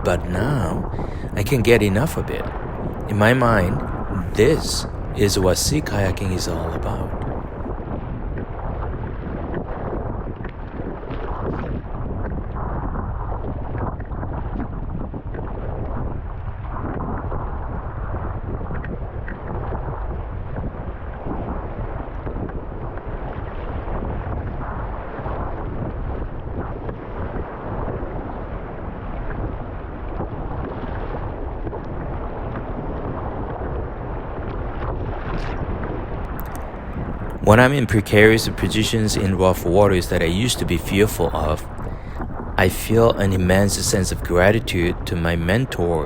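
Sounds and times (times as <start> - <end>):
rough sea water washing: 0.0 - 7.7
wind buffeting the microphone: 0.0 - 46.0.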